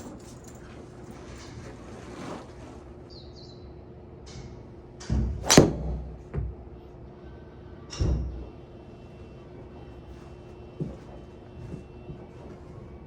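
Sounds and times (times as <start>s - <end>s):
golf driver striking ball: 5.4s - 6.2s.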